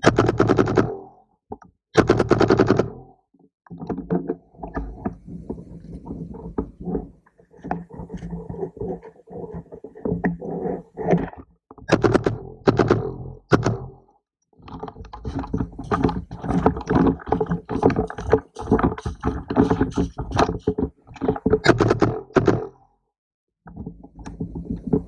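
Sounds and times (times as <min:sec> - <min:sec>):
knocking and rattling: 0:14.7 - 0:22.6.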